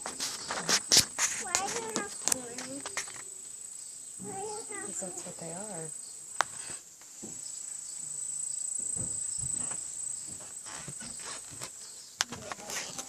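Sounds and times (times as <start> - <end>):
insects trilling: 0.0 - 13.0.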